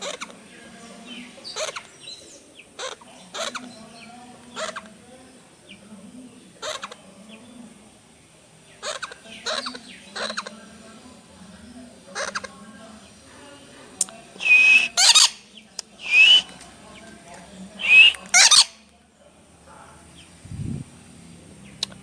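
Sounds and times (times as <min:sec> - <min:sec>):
bird short sharp calls: 0:14.4 - 0:15.4, 0:16.0 - 0:16.5, 0:17.8 - 0:18.8.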